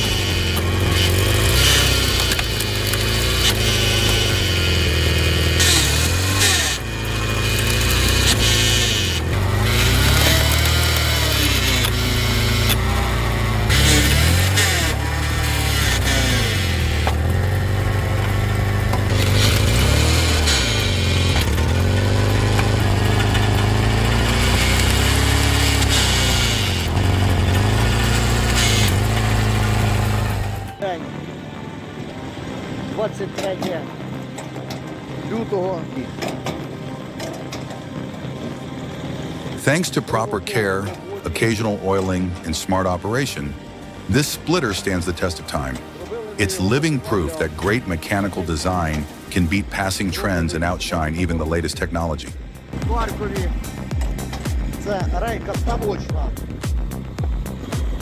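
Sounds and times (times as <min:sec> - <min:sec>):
engine running under load: 0:00.0 - 0:58.0
machine hum: 0:00.0 - 0:58.0
wood cracking and splintering: 0:07.5 - 0:17.4.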